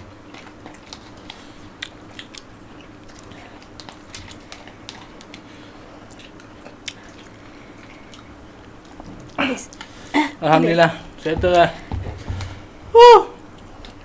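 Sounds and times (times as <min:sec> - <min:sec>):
person chewing noodles: 0:00.0 - 0:10.1
steady low hum: 0:09.7 - 0:13.4.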